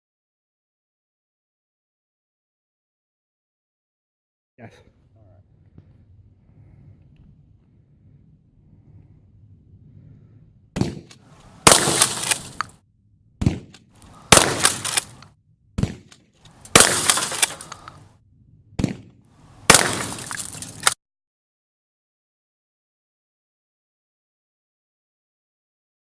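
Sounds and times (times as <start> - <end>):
gunshots: 10.8 - 12.7, 13.4 - 15.2, 15.8 - 18.0, 18.8 - 21.0
crashing burst: 11.6 - 12.7, 14.2 - 15.2, 16.7 - 17.9, 19.6 - 21.0.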